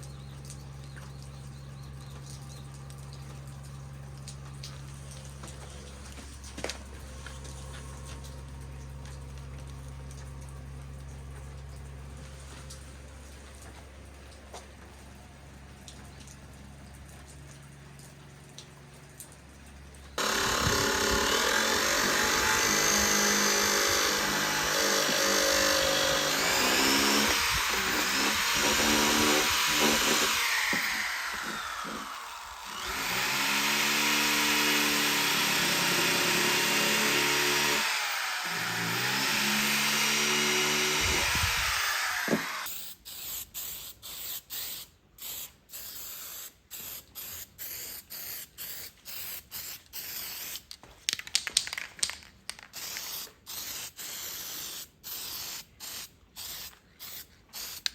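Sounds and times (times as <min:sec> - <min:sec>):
electric power tool running: 0:20.2 - 0:42.7
short hissing bursts: 0:42.6 - 0:50.7, 0:52.7 - 0:57.9.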